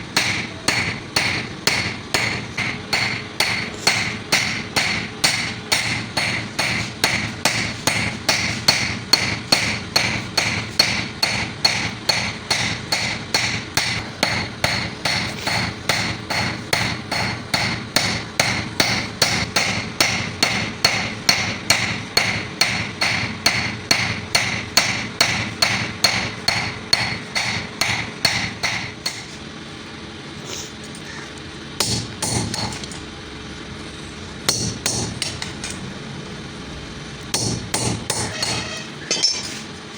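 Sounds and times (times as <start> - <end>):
hammer blows on anvil: 0.1 - 29.3, 37.3 - 39.7.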